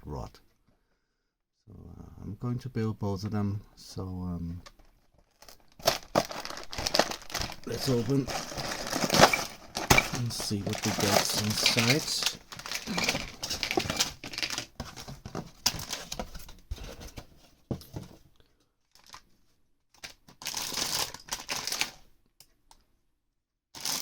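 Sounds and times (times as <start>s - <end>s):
plastic bags crinkling: 4.8s - 16.2s, 18.9s - 19.2s, 20.0s - 22.0s, 23.8s - 24.0s
cardboard box tearing: 5.8s - 10.0s.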